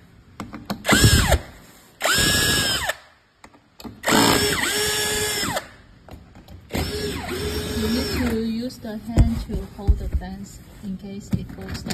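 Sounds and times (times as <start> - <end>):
power screwdriver whining: 0.9 - 1.4, 2.0 - 3.0, 4.0 - 5.7, 6.7 - 8.4.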